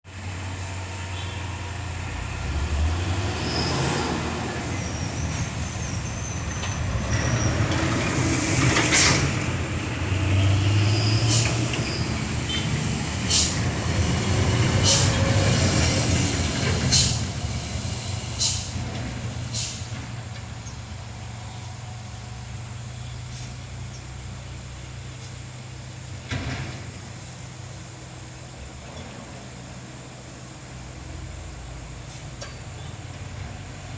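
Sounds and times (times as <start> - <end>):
diesel truck engine running: 0.1 - 33.9
air brake hisses: 10.8 - 20.2, 32.1 - 32.4.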